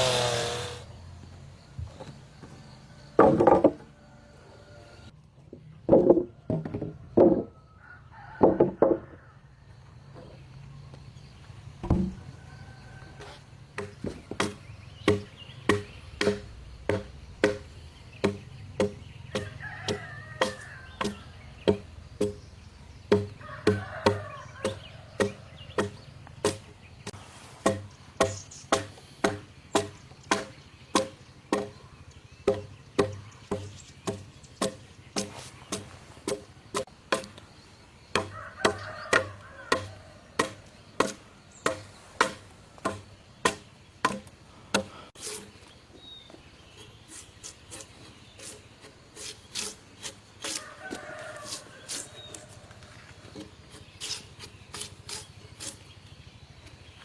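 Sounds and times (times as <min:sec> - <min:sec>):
hand tool striking wood: 0:11.8 - 0:12.2, 0:13.8 - 0:22.5, 0:23.1 - 0:26.7, 0:27.6 - 0:31.8, 0:32.4 - 0:37.4, 0:38.1 - 0:45.6.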